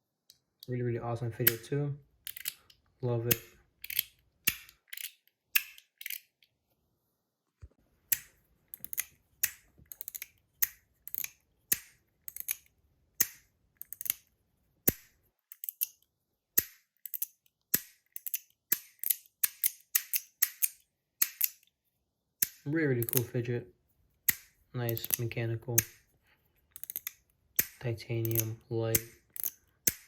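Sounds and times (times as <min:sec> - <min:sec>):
fidget toy metallic clicks: 0:01.4 - 0:06.4, 0:08.1 - 0:16.0, 0:16.6 - 0:21.7, 0:22.4 - 0:23.3, 0:24.3 - 0:26.0, 0:26.7 - 0:30.0.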